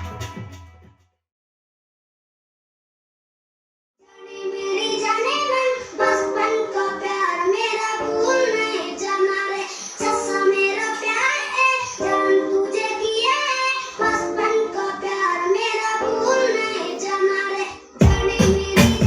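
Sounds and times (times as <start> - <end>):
bass-heavy music track: 0.0 - 0.9, 18.0 - 19.0
song with high singing voice: 4.0 - 19.0.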